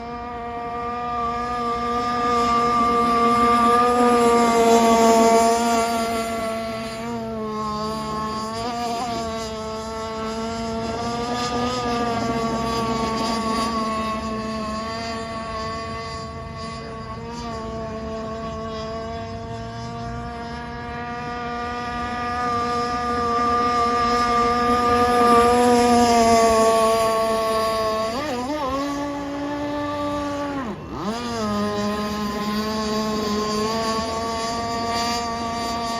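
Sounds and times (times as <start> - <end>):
small gas engine running high-pitched: 0.0 - 35.9.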